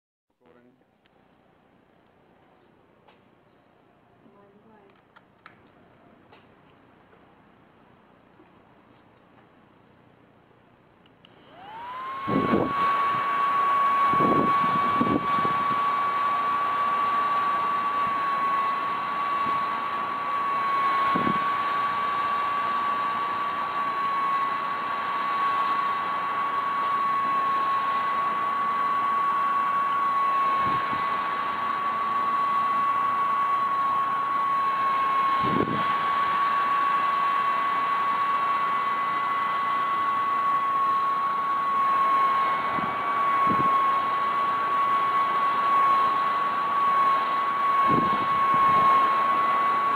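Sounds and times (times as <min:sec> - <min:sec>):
small vacuum cleaner whining: 0:11.1 - 0:49.9.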